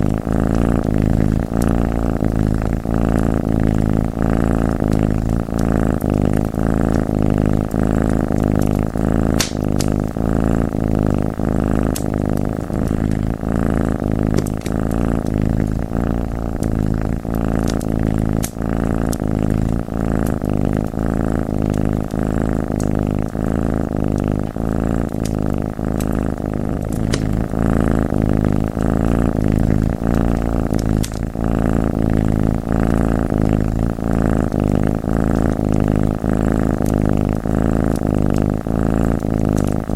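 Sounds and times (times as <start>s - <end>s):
cat purring: 0.0s - 39.9s
wood fire crackles: 0.8s - 2.9s, 3.7s - 20.9s, 21.5s - 23.4s, 24.1s - 31.7s.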